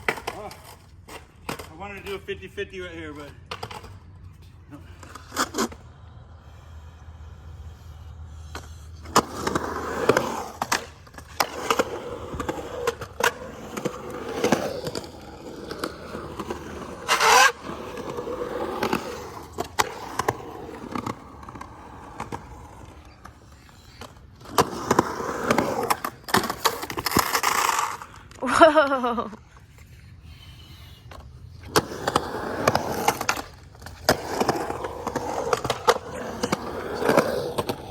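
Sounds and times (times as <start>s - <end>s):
skateboard clacking on ground: 0.0s - 2.3s, 3.2s - 6.0s, 8.4s - 28.4s, 31.1s - 37.9s
skateboard scrape: 0.0s - 2.3s, 3.0s - 37.9s
skateboard wheels rolling on concrete: 0.0s - 37.9s.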